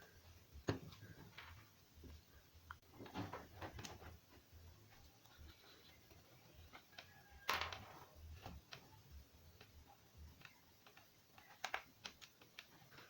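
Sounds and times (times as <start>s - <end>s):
small parts clicking and tapping: 5.0s - 13.0s.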